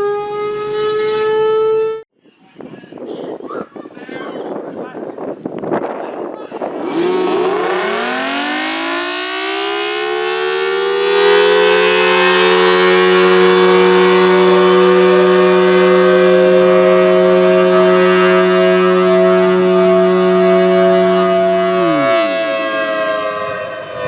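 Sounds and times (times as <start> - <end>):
warning siren winding up: 0.0 - 2.0, 6.8 - 24.0.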